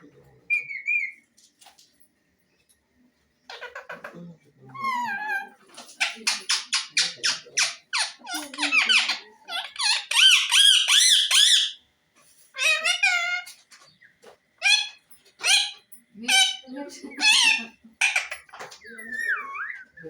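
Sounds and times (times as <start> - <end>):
parrot whistled calls: 8.0 - 11.8, 19.0 - 20.0.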